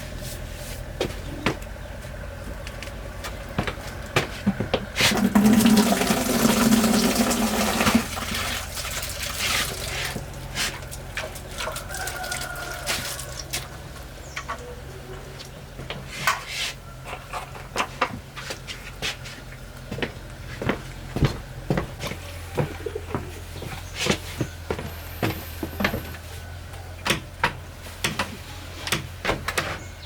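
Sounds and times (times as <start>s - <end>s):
liquid pouring into container: 5.1s - 10.3s.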